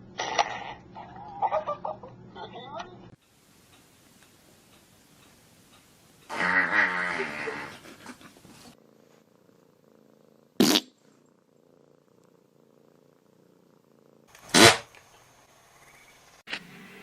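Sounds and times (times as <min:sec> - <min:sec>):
cat purring: 0:03.8 - 0:14.4
short sharp burst: 0:14.4 - 0:15.0.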